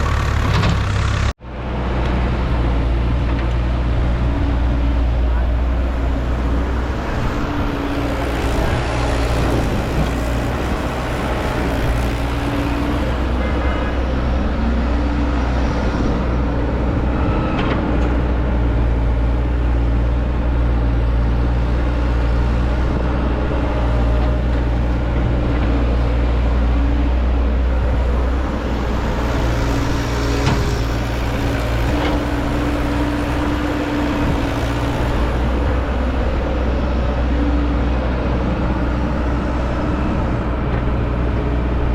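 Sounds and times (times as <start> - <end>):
diesel engine running: 0.0 - 17.4, 18.1 - 41.9.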